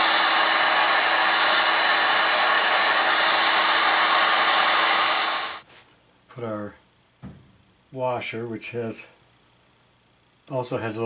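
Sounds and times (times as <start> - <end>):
faint motor whine: 0.0 - 5.6
hot-air blower running: 0.0 - 5.6.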